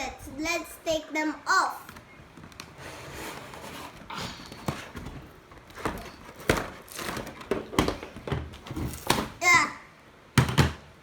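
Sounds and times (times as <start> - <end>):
plastic packaging clicks and rustles: 3.8 - 9.4.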